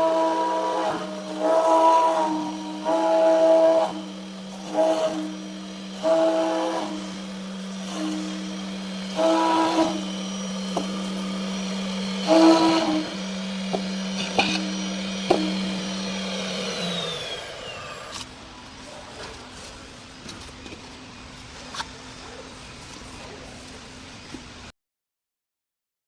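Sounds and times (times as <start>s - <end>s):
spindle whine winding down: 0.0s - 18.9s
cnc router spindle humming: 0.0s - 24.7s.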